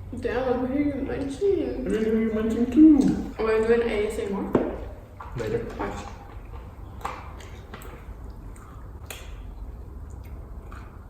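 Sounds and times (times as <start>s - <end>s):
low room hum: 0.0s - 11.0s
chewing: 5.1s - 11.0s
wet mouth clicks and smacks: 6.1s - 11.0s.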